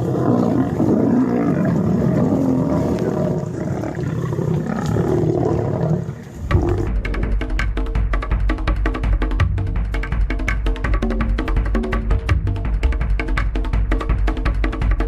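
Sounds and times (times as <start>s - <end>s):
large animal roaring and growling: 0.0s - 7.4s
music with drum beat: 6.4s - 15.0s.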